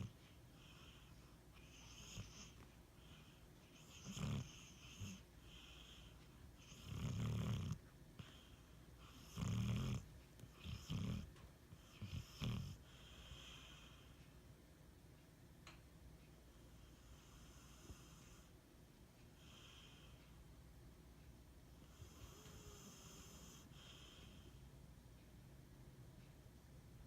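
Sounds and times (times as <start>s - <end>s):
hissy breaths: 0.0s - 6.9s, 21.8s - 24.8s
dog snoring and snorting: 0.0s - 14.1s, 16.8s - 18.5s, 21.8s - 24.6s.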